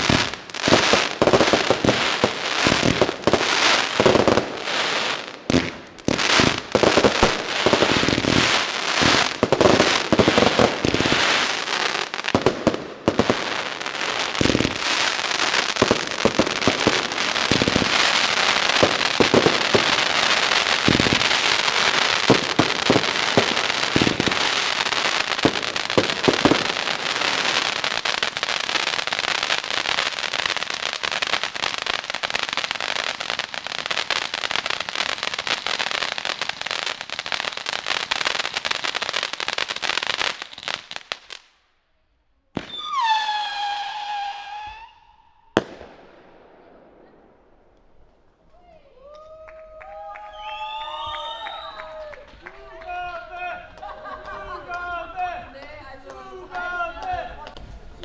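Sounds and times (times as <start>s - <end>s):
firework crackling: 0.0s - 41.6s, 42.6s - 58.0s
firework shots and bangs: 15.8s - 27.8s, 45.6s - 47.8s.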